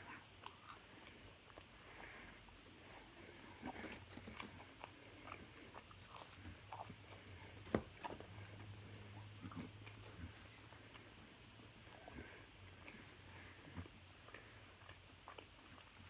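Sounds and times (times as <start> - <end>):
person chewing: 0.0 - 11.2, 11.8 - 16.0.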